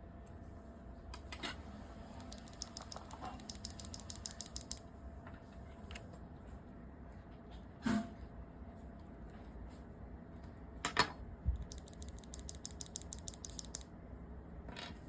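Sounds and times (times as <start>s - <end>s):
mechanical keyboard typing: 2.2s - 4.8s, 11.6s - 13.9s.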